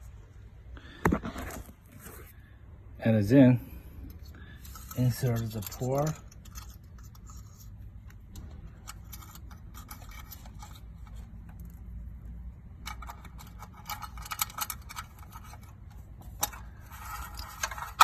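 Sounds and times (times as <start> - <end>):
low steady hum: 0.0 - 18.0
small clicks and scratching: 4.1 - 18.0.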